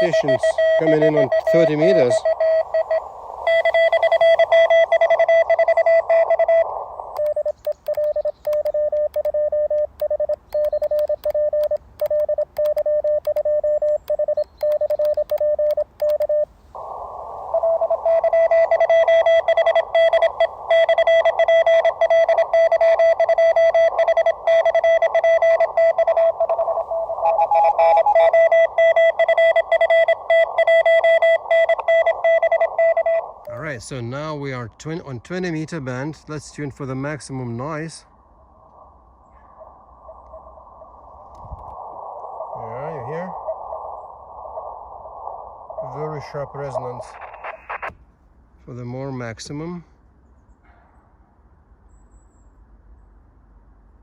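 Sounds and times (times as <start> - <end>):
morse code beep tone: 0.0 - 16.5, 17.5 - 33.6
receiver hiss: 0.0 - 49.8.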